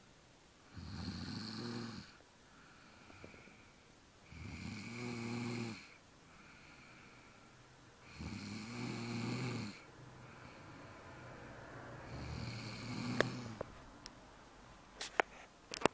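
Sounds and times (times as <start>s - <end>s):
quiet breathing: 0.6s - 14.2s
person snoring: 0.7s - 2.2s, 4.3s - 7.3s, 8.0s - 13.6s.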